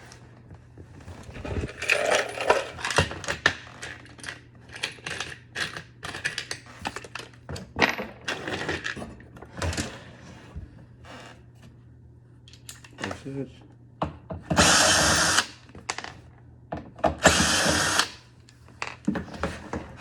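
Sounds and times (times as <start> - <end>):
metal parts clinking and rattling: 1.6 - 9.0.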